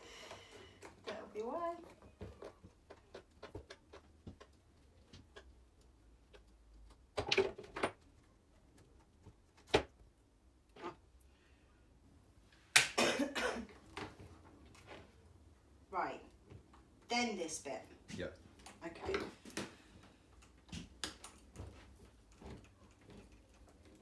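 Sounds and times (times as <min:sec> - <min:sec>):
hand tools clicking on plastic and metal: 0:00.2 - 0:09.7.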